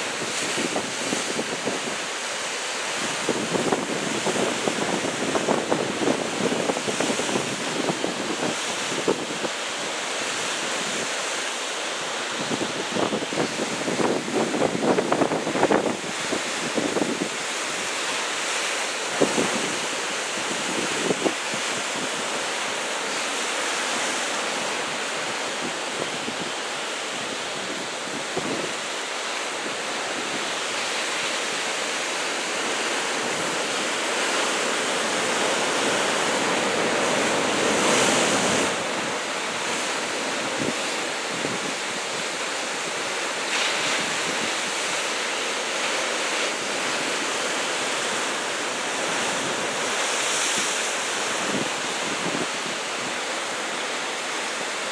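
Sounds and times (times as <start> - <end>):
surf breaking on shore: 0.0 - 54.9
wind buffeting microphone: 51.3 - 53.2.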